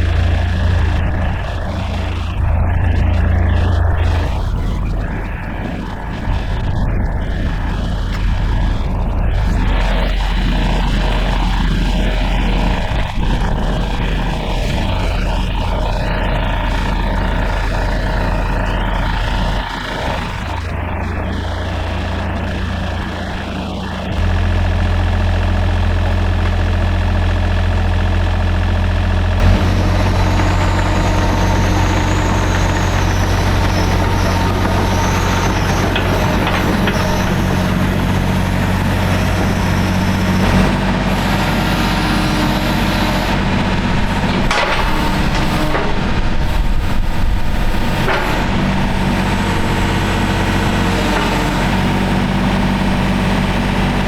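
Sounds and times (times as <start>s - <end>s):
excavator diesel engine running: 0.0s - 54.0s.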